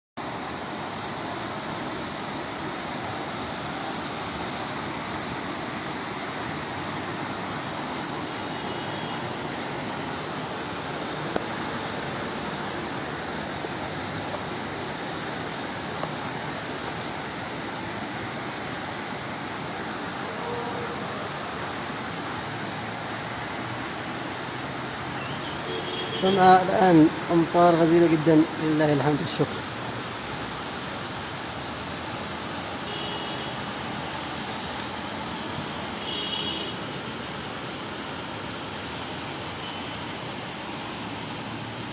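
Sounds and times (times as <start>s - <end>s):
heavy rain hissing: 0.2s - 41.9s
raindrops tapping: 13.4s - 17.1s.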